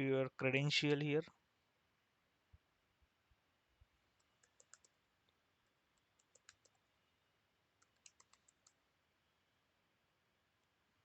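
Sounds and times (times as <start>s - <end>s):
faint keyboard typing: 4.1s - 6.9s, 7.7s - 8.9s.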